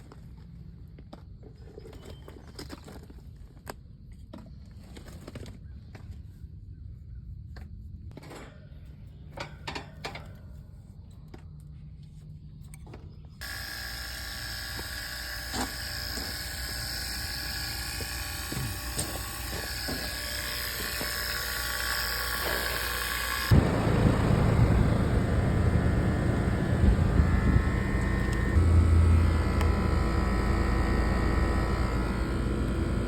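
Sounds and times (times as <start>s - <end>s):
compressor whine and hum: 11.0s - 33.0s
low hum: 12.4s - 33.0s.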